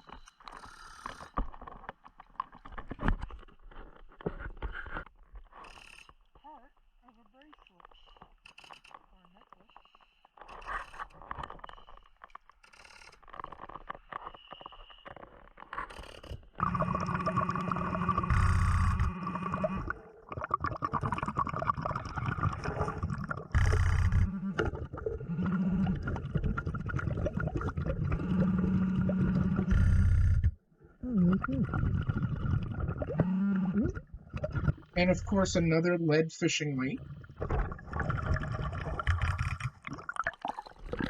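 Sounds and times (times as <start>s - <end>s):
underwater hum: 15.9s - 41.0s
diver breathing: 16.6s - 20.2s, 22.7s - 26.2s
exhaled bubbles: 16.6s - 35.6s, 36.8s - 41.0s.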